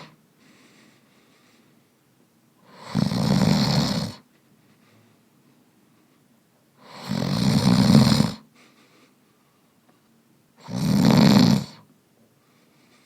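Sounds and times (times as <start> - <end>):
faint breath: 0.0 - 2.0, 4.5 - 6.4, 8.5 - 10.1, 12.2 - 13.0
person snoring: 2.6 - 4.2, 6.8 - 8.4, 10.6 - 11.8.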